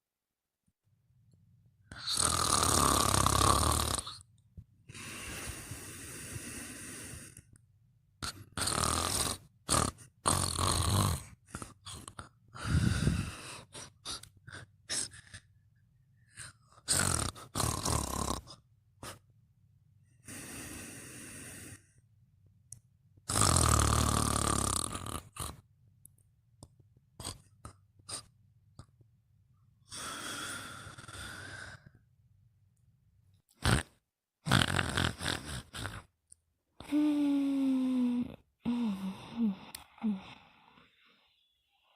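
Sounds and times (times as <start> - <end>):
person snoring: 1.9 - 4.3, 4.9 - 7.6, 8.2 - 15.5, 16.3 - 19.2, 20.2 - 22.0, 23.3 - 25.6, 27.2 - 28.3, 29.8 - 32.0, 33.5 - 36.1, 36.8 - 41.4.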